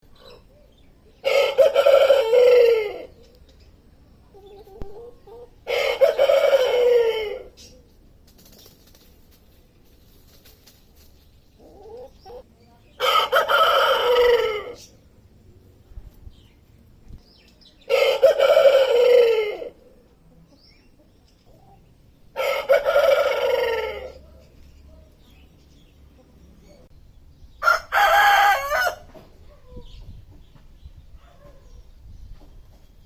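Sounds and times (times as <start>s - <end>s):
rooster crowing: 1.2s - 3.1s, 5.7s - 7.5s, 13.0s - 14.8s, 17.9s - 19.7s, 22.4s - 24.2s, 27.6s - 29.2s.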